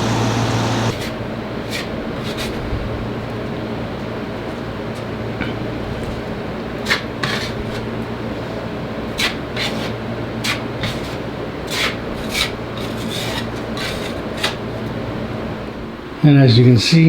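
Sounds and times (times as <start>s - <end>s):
steady low hum: 0.0s - 1.0s
drywall knife scraping wall: 0.0s - 1.1s, 9.2s - 14.7s.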